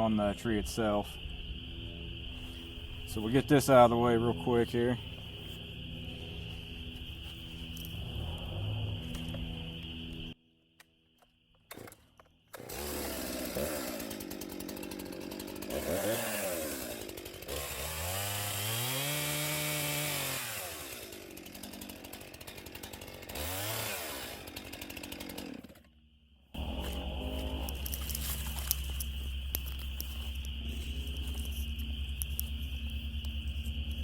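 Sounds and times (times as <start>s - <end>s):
chainsaw revving: 11.7s - 32.5s.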